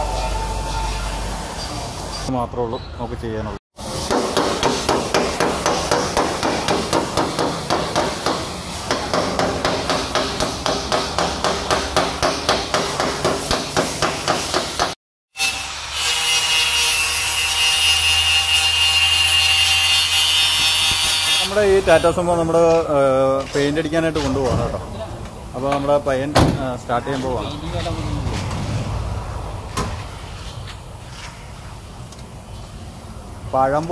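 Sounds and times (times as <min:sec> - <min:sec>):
hammer beating sheet metal: 0:04.0 - 0:15.0.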